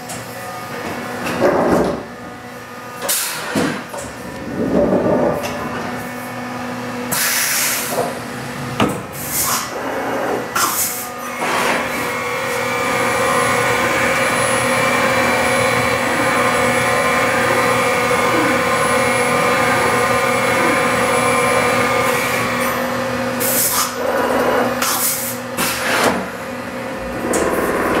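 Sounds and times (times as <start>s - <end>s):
machine spindle whine: 9.6s - 24.8s, 26.2s - 28.0s.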